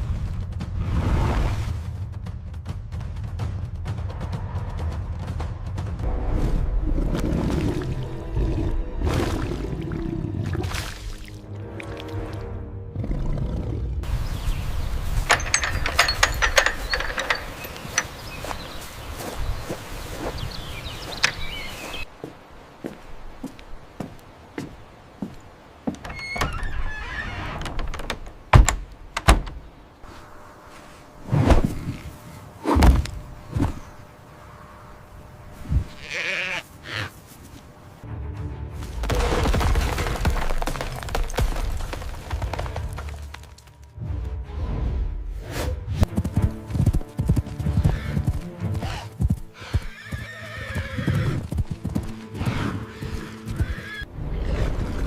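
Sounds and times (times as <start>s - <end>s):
background music: 0.0s - 18.8s, 37.8s - 54.4s
rustling noise: 14.6s - 24.2s, 30.0s - 33.9s
hoof-like thuds: 14.6s - 26.1s.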